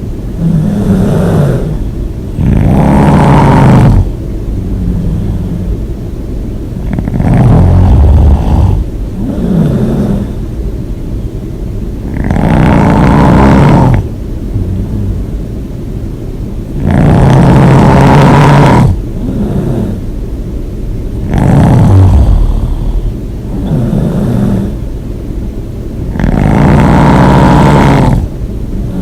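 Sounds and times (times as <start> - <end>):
quiet breaths: 0.0 - 29.0
heavy open-mouthed snoring: 0.4 - 5.9, 6.8 - 10.4, 12.0 - 15.4, 16.7 - 20.1, 21.2 - 24.8, 26.0 - 29.0.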